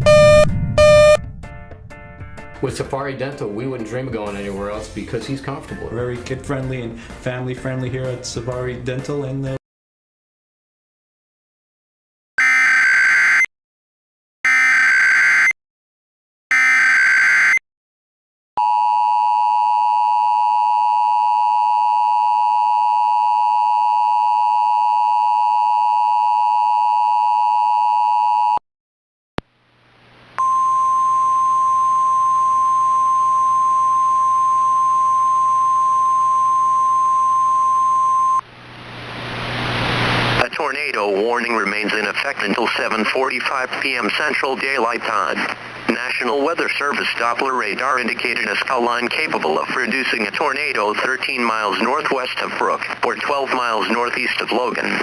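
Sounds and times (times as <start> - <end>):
steady radio alert tone: 0.0 - 1.2, 40.4 - 55.0
two-tone attention signal: 0.0 - 1.2, 30.4 - 38.4.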